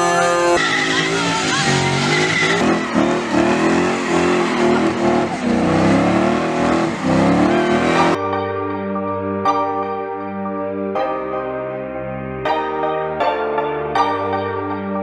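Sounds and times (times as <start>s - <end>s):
tire squeal: 0.0s - 8.2s
car engine revving: 0.6s - 8.2s.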